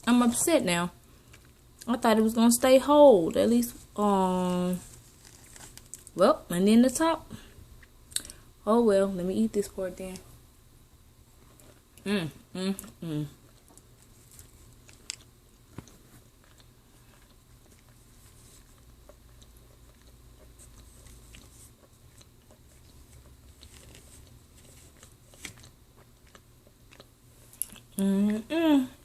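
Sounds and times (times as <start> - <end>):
person chewing crunchy food: 12.8 - 28.0.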